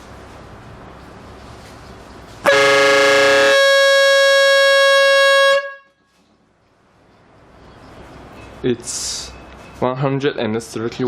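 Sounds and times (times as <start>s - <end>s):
air horn blast: 2.4s - 6.1s.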